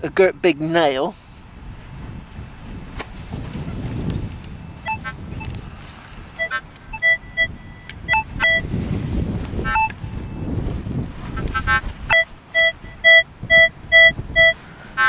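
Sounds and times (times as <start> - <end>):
wind rumbling on microphone: 0.0 - 15.0
metal detector beeps: 4.6 - 5.6, 6.4 - 8.7, 9.6 - 10.5, 12.1 - 14.6.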